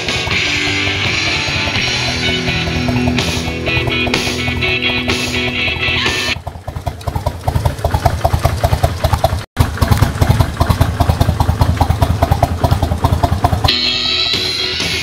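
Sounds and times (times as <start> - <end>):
motorcycle engine idling: 0.0 - 15.0.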